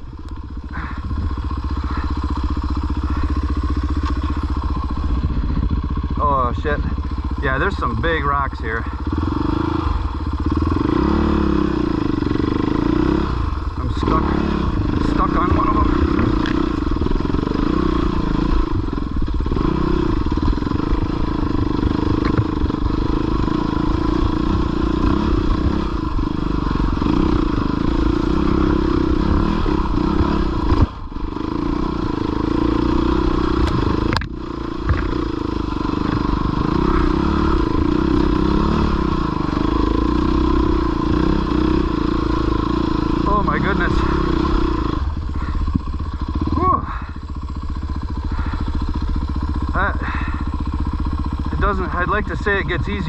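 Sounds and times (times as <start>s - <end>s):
dirt bike engine running: 0.0s - 53.0s.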